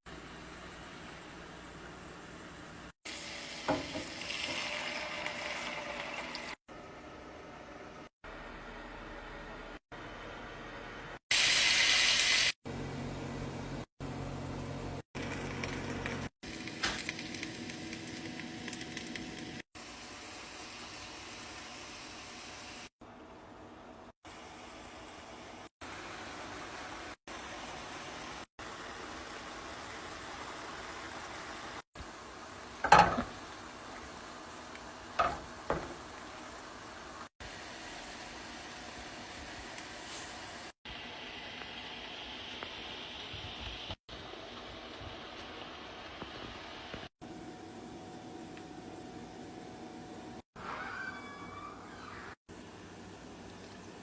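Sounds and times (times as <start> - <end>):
food sizzling in a hot pan: 0.1 - 6.6, 11.3 - 12.6, 15.2 - 22.9, 24.3 - 47.1
utensil clanking against pan: 32.8 - 33.3.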